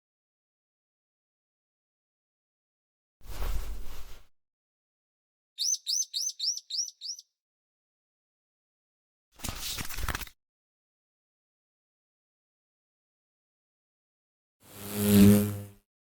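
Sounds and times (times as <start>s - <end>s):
bird chirping: 5.6s - 7.3s.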